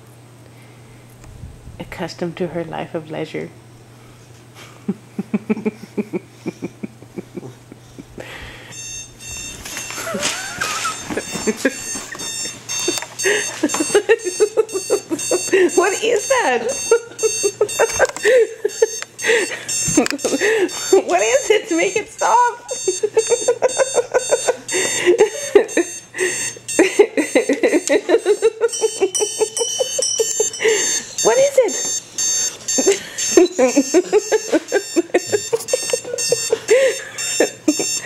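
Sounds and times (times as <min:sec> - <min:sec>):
alarm clock beep: 0:08.7 - 0:38.0
pet whining: 0:08.8 - 0:38.0.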